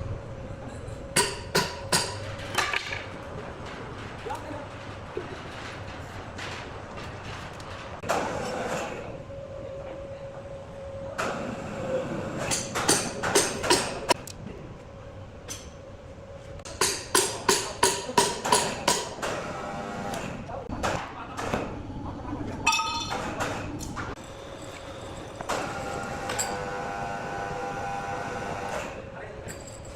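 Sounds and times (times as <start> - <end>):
hammer striking chisel into wood: 16.7 - 19.2.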